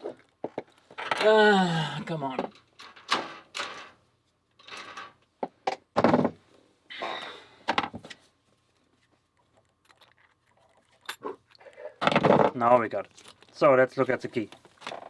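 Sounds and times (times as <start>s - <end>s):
hands handling packaging: 12.6s - 15.0s.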